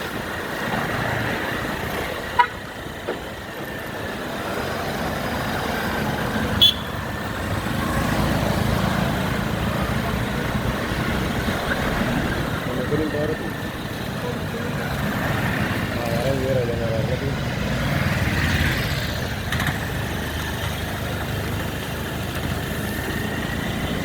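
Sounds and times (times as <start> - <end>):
road traffic: 0.0 - 24.0
horn toots: 6.6 - 7.0.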